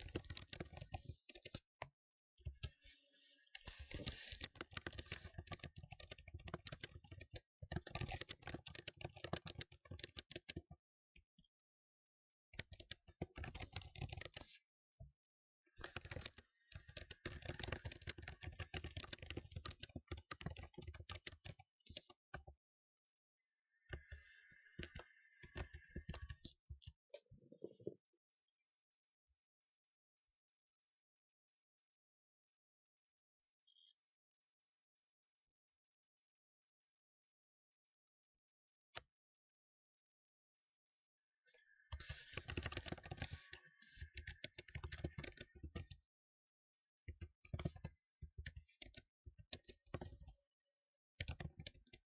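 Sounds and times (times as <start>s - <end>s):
fast typing on keyboard: 0.0s - 1.7s, 3.6s - 10.8s, 12.6s - 14.6s, 15.8s - 22.2s, 24.0s - 26.6s, 41.7s - 46.0s, 47.1s - 50.4s, 51.2s - 52.0s.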